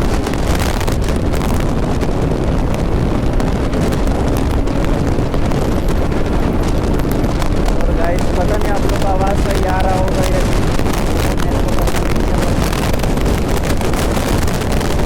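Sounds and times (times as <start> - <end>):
motorcycle engine running: 0.0 - 15.0
wind buffeting microphone: 0.0 - 15.0.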